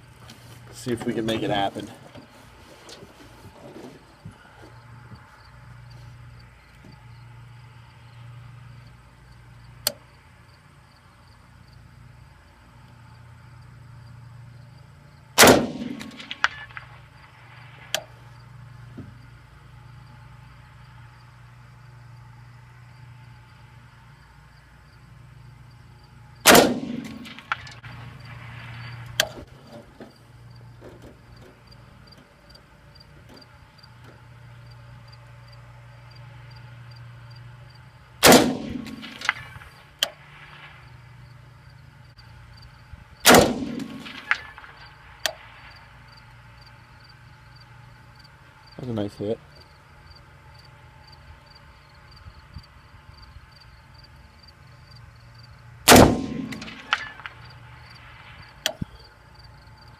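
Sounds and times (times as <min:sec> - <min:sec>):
rifle shots: 0:15.4 - 0:17.2, 0:26.4 - 0:29.3, 0:38.2 - 0:39.8, 0:43.2 - 0:44.9, 0:55.9 - 0:57.4.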